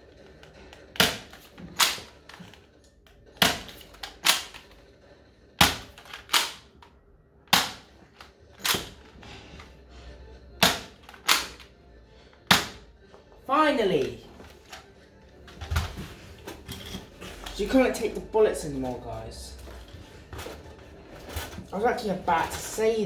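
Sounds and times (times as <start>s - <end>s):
toy dart blaster snapping: 3.4s - 4.7s, 10.6s - 11.6s.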